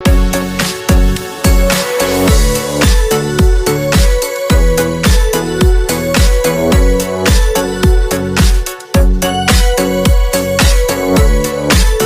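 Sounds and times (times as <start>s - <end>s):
sustained pitched notes: 0.0s - 8.4s
punchy kick drum beat: 0.0s - 12.0s.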